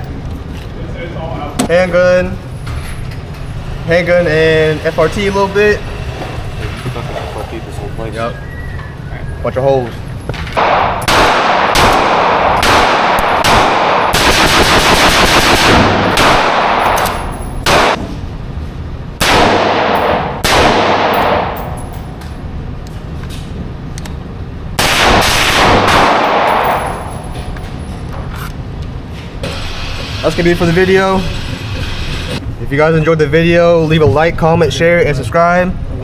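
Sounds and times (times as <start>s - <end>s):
rapid gunshots echoing: 10.6s - 18.0s, 19.2s - 21.8s, 24.8s - 27.1s.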